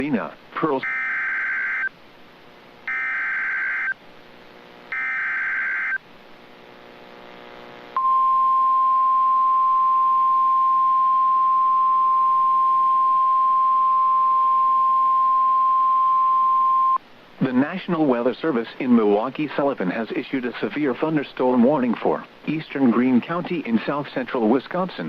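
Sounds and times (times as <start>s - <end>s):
steady single-pitch attention tone: 8.0s - 17.0s.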